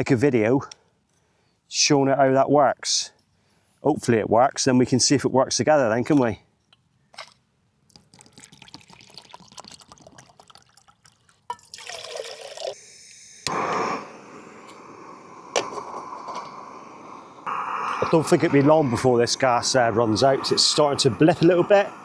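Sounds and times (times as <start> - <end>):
water pouring into a pot: 7.9 - 13.5
gas stove burning hiss: 12.7 - 22.0
stove igniter click: 13.4 - 17.2.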